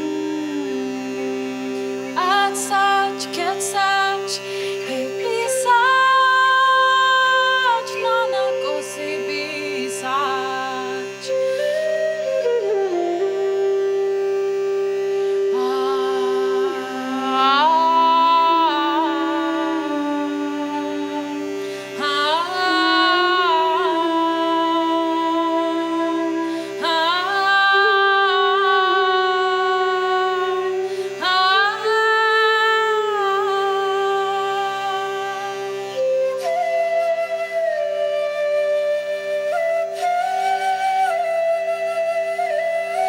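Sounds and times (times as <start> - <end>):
flute melody: 0.0 - 22.8, 33.8 - 43.0
pulsing drone: 0.0 - 37.9.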